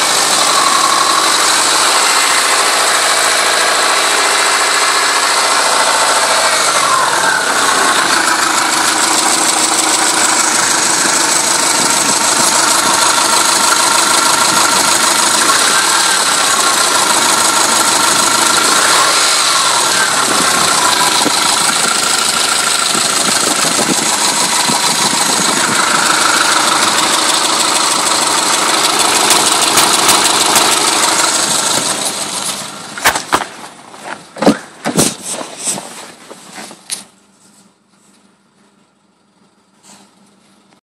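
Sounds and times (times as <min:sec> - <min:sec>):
car engine idling with a knock: 0:29.5 - 0:35.4.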